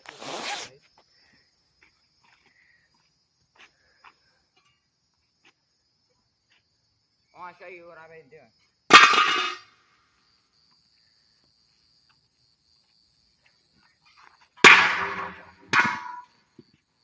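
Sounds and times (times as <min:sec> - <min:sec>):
crickets chirping: 0:00.0 - 0:17.0
loud bangs with ringing tail: 0:08.9 - 0:09.7, 0:14.6 - 0:16.3.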